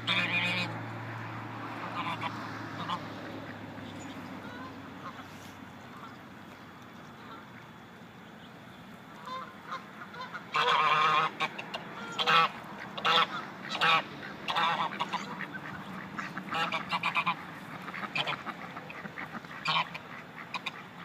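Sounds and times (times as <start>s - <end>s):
geese honking: 0.0s - 1.0s, 1.7s - 6.2s, 9.1s - 21.0s.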